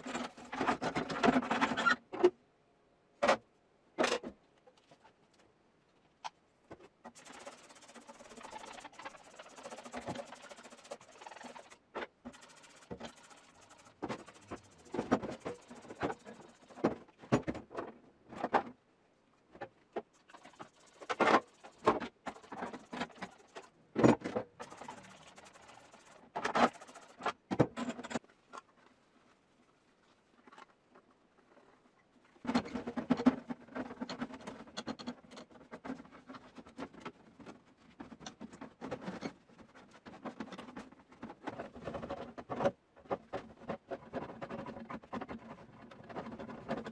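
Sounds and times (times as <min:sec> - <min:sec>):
hard objects clicking and rattling: 0:06.8 - 0:18.6.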